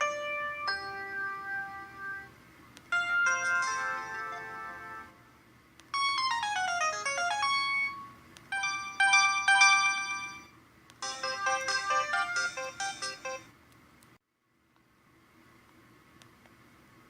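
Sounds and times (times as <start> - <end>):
synthesized phone ringtone: 2.9 - 5.2, 6.0 - 13.5.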